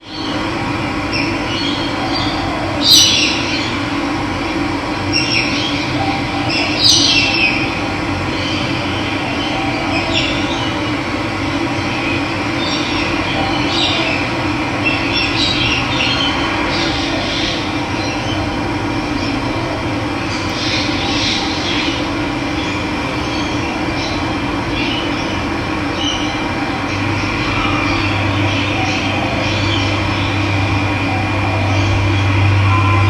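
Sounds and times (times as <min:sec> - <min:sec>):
birds chirping: 0:20.2 - 0:33.0.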